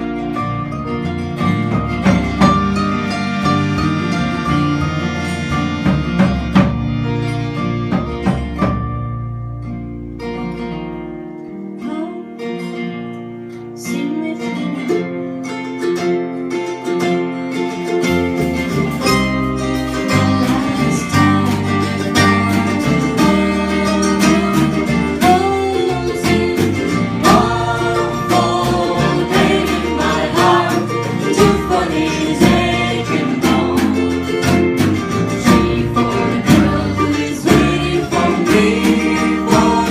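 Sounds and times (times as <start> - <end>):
acoustic guitar: 0.0 - 39.9
bass: 0.0 - 39.9
person singing melody: 19.9 - 39.9.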